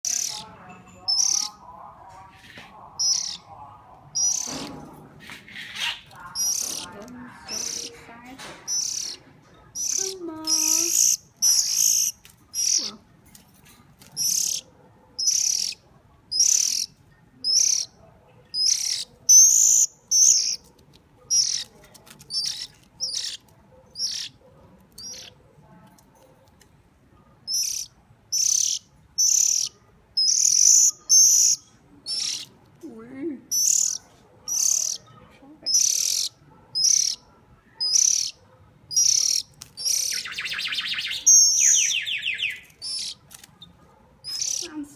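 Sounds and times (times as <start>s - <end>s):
bird begging chirps: 0.0s - 1.6s, 3.0s - 3.5s, 4.1s - 4.6s, 5.6s - 8.0s, 8.6s - 13.0s, 14.2s - 20.6s, 21.3s - 21.7s, 22.3s - 24.4s, 25.0s - 25.3s, 27.5s - 32.5s, 33.5s - 35.1s, 35.7s - 37.2s, 37.8s - 43.3s, 44.2s - 44.9s.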